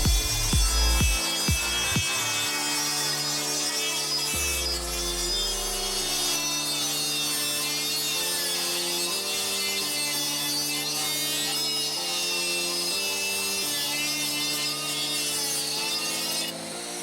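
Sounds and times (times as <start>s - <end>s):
background music: 0.0s - 17.0s
die grinder grinding steel: 0.0s - 17.0s.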